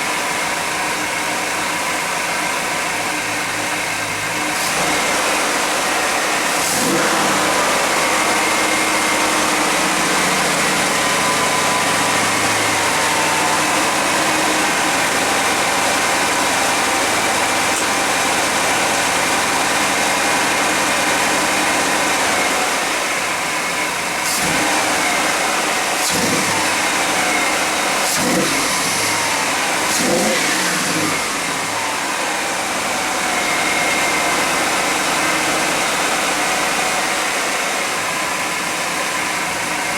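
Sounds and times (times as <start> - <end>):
car engine running: 0.0 - 39.9.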